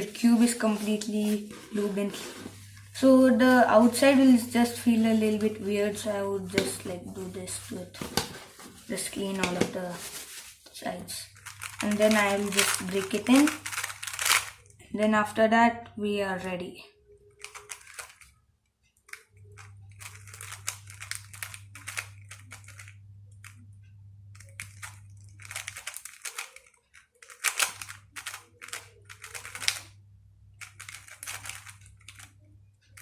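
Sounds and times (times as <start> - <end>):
plastic puzzle cube clicking: 11.4 - 14.6, 17.4 - 18.3, 19.1 - 23.6, 24.4 - 29.9, 30.6 - 32.4.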